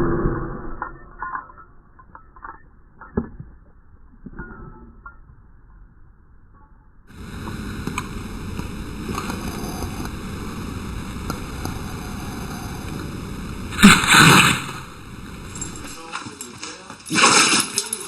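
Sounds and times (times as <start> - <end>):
steady rushing noise: 7.1 - 16.2.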